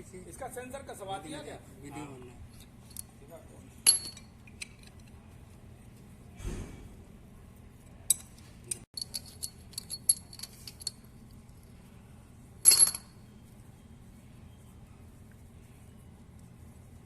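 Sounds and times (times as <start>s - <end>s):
steel parts clinking: 3.8s - 5.1s, 8.1s - 11.1s, 12.6s - 13.2s
metal parts clattering: 9.0s - 11.0s, 12.6s - 13.1s.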